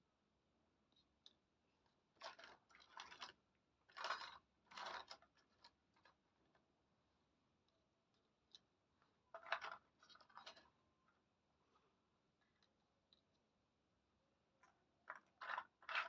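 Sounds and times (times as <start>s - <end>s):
toy kitchen pieces scraping and rattling: 2.1s - 6.2s, 9.3s - 10.8s, 14.6s - 16.0s.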